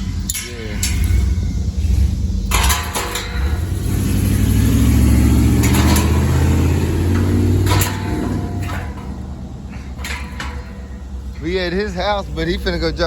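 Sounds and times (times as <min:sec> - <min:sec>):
vehicle engine accelerating: 0:03.4 - 0:13.0.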